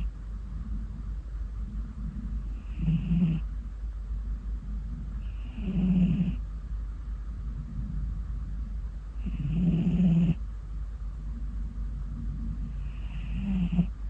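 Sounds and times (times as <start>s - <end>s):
cat snoring: 2.5s - 3.5s, 5.2s - 6.4s, 9.2s - 10.4s, 12.6s - 14.0s.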